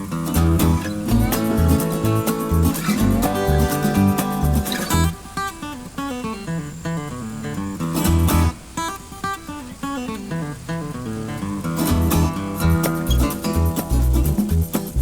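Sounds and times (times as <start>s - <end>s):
country tune on acoustic guitar: 0.0s - 15.0s
bass notes: 0.4s - 5.1s, 11.9s - 15.0s
steady beat: 0.4s - 5.2s, 11.9s - 15.0s.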